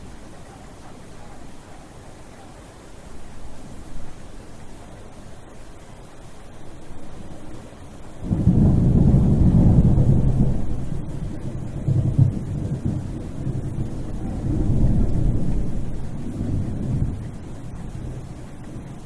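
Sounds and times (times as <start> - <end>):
rain hissing: 0.0 - 19.0
thunder rumbling: 8.2 - 19.0.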